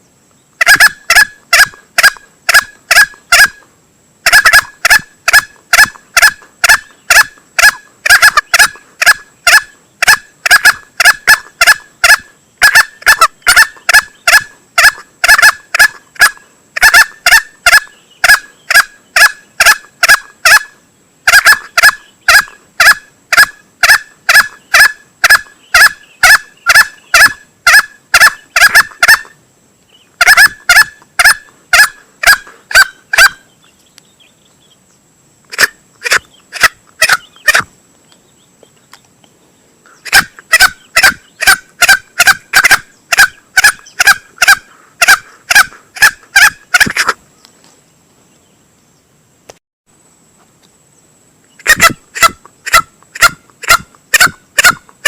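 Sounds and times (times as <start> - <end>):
junglefowl calling sharp notes: 0.6 - 29.4, 30.2 - 33.6, 35.5 - 37.7, 39.9 - 47.2, 51.6 - 54.9.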